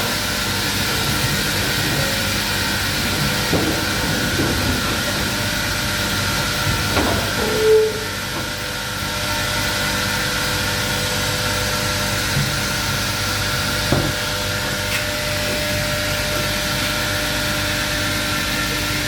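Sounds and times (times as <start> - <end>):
sawmill machinery running: 0.0 - 19.0
short machine squeal: 7.4 - 8.2.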